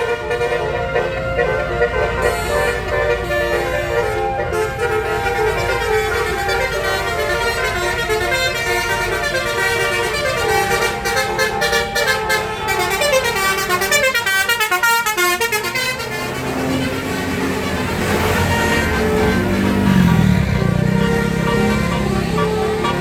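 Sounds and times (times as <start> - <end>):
multi-trumpet air horn melody: 0.0 - 23.0.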